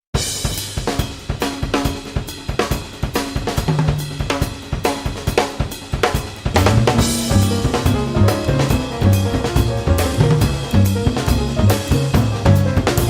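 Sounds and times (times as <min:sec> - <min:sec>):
drum kit beat: 0:00.2 - 0:13.0
band playing: 0:06.6 - 0:13.0
bass notes: 0:06.6 - 0:13.0.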